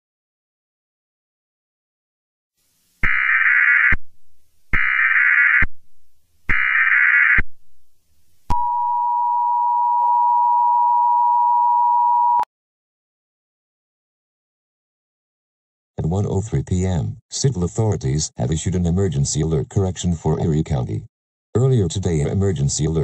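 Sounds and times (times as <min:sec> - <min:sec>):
buzzing digital data bursts: 0:03.0 - 0:04.0.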